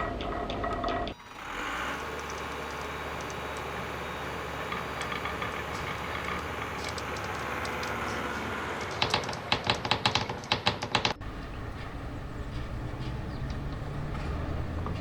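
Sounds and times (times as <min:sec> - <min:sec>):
marbles rolling on wooden track: 0:02.0 - 0:11.2
sharp wooden clacks: 0:04.7 - 0:11.2.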